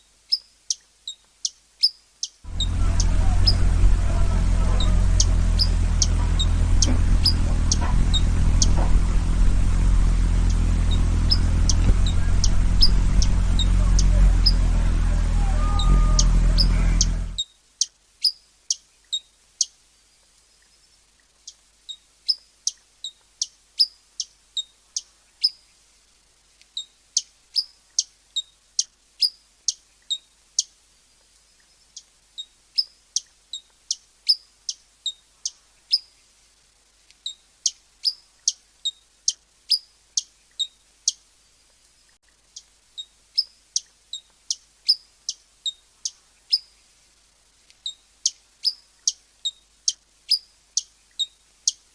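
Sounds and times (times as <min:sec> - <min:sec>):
hummingbird chip calls: 0:01.8 - 0:17.4, 0:47.8 - 0:51.8.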